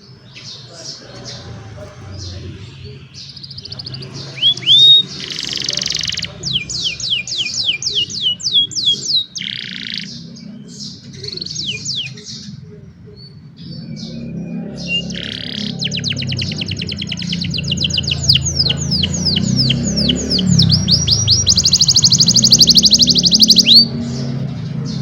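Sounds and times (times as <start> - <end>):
canary singing: 0.0 - 25.0.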